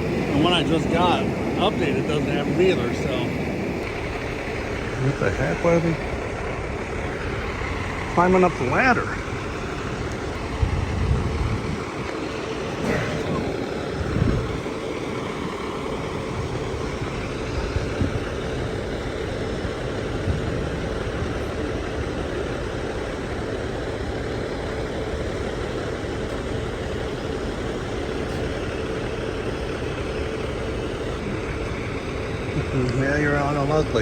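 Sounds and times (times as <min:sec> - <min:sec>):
diesel engine idling: 0:00.0 - 0:34.0.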